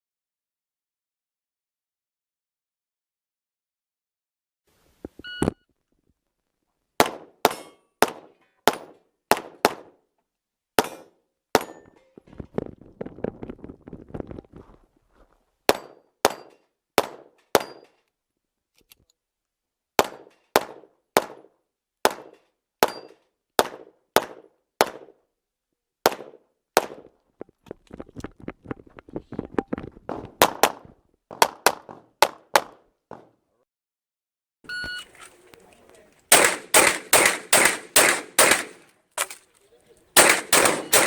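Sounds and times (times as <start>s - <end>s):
pistol shots: 36.3s - 39.4s, 40.2s - 41.0s.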